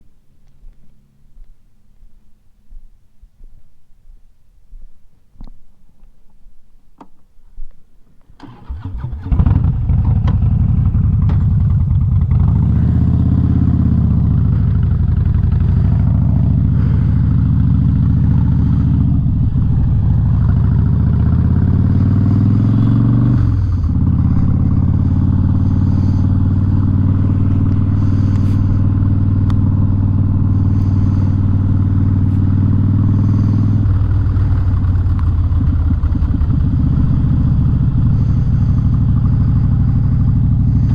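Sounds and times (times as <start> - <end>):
loud motorcycle engine revving: 9.2 - 40.9.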